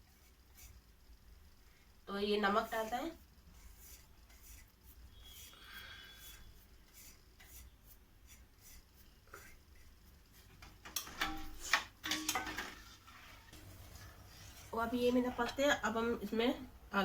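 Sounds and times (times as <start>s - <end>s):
spoon scraping in a pot: 11.1s - 16.0s.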